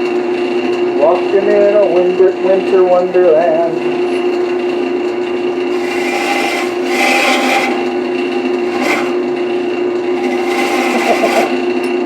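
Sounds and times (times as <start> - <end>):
wood lathe motor hum: 3.4 - 12.0
turning tool cutting wet wood: 3.7 - 4.7, 5.4 - 9.4, 10.1 - 11.8.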